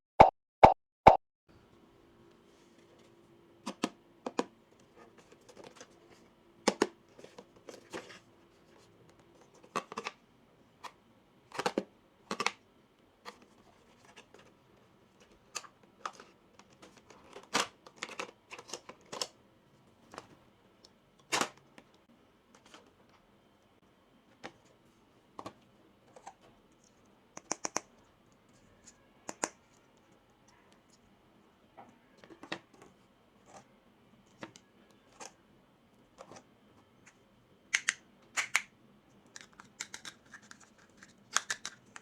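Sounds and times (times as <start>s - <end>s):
plastic toy pieces clicking: 37.7s - 38.7s, 39.3s - 42.0s.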